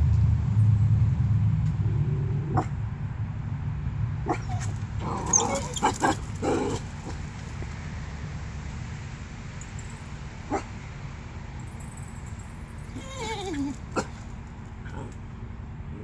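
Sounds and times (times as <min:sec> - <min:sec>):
steady low rumble: 0:00.0 - 0:05.1
dog whining: 0:04.3 - 0:06.8, 0:12.9 - 0:14.2
dog barking: 0:10.5 - 0:10.7.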